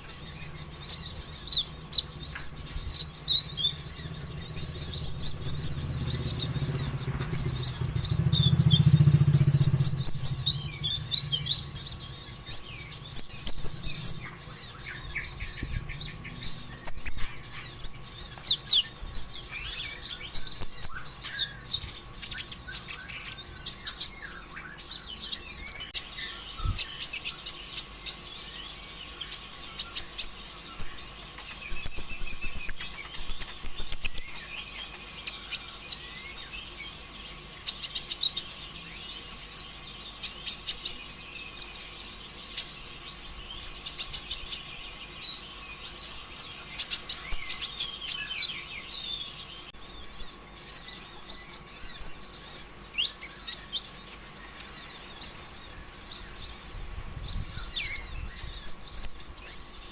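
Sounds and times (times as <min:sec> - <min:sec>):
sunbird singing chirps and trills: 0:00.0 - 0:59.9
low rumble: 0:02.7 - 0:18.1.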